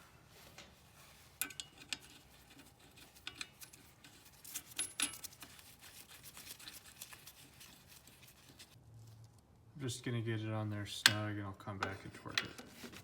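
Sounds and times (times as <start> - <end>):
metallic clicks of washer and nut: 3.2 - 5.2.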